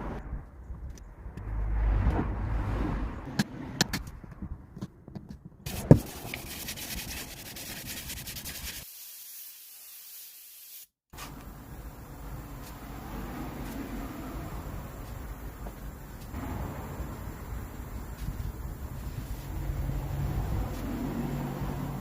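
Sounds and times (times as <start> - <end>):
rubbing on plastic: 5.7 - 8.9
steady hiss: 5.7 - 20.9.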